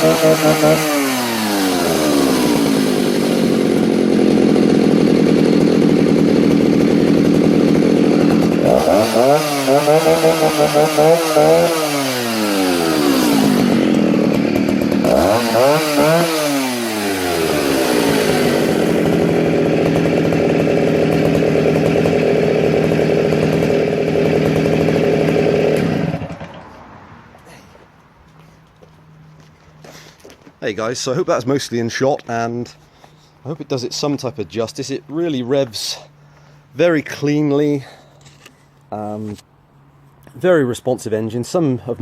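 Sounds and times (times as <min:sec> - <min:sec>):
chainsaw engine idling and revving: 0:00.0 - 0:26.8.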